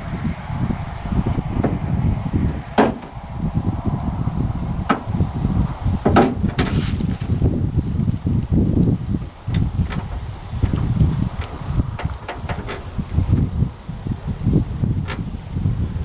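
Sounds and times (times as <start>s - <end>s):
wind buffeting microphone: 0.0s - 16.0s
sharp knocks and clicks: 2.4s - 3.2s, 6.0s - 6.8s, 9.5s - 12.9s.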